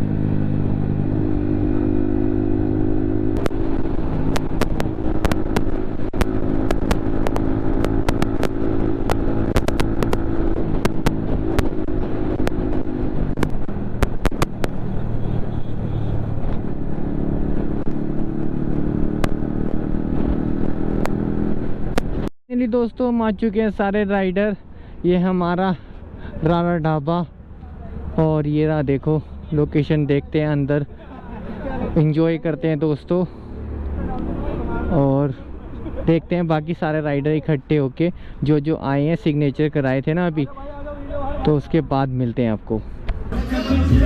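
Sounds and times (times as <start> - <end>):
motorcycle engine running: 0.0 - 22.2
sharp clicks and knocks: 3.4 - 14.8.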